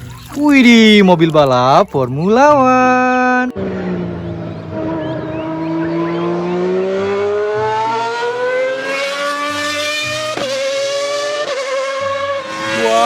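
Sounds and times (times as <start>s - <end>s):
race car engine rising in pitch: 3.4s - 13.0s.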